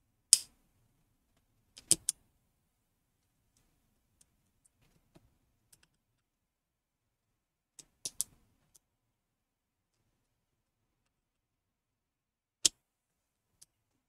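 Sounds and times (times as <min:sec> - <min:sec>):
laptop parts clicking and tapping: 0:01.8 - 0:02.2.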